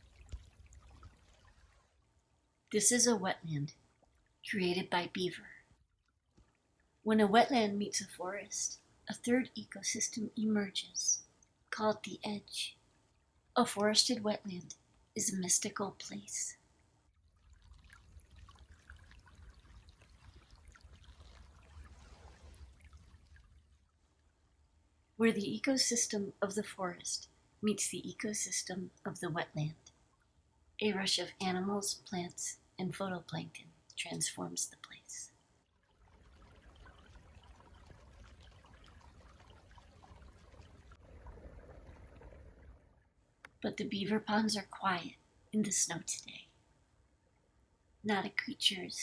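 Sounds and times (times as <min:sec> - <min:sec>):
faint trickle of water: 0:00.0 - 0:25.3, 0:28.5 - 0:30.8, 0:33.3 - 0:43.6
small soft ticks: 0:05.5 - 0:06.9, 0:11.2 - 0:11.6, 0:14.7 - 0:15.2.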